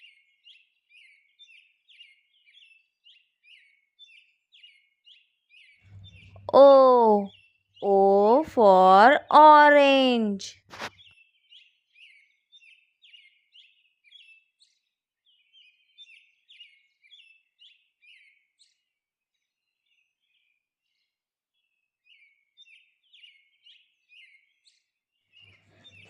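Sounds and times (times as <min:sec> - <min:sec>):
bird chirping: 0:00.0 - 0:14.4, 0:25.4 - 0:26.0.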